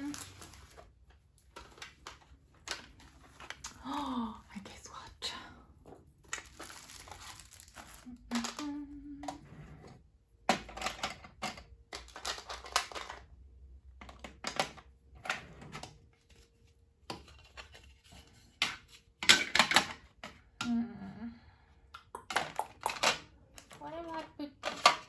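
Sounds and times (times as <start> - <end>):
small hard objects clattering: 0.0 - 3.9, 6.1 - 8.8, 11.9 - 13.4.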